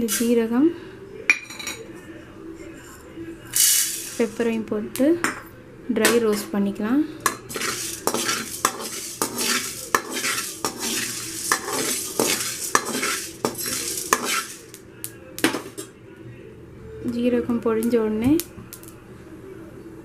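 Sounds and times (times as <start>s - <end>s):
spatula scraping and knocking pan: 7.3s - 14.8s.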